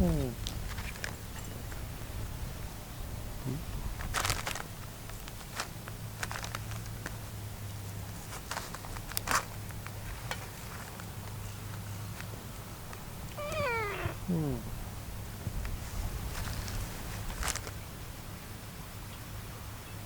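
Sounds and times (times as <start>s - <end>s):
soft clicks and rustles: 4.0s - 14.2s, 15.5s - 17.8s
low steady hum: 11.4s - 16.2s.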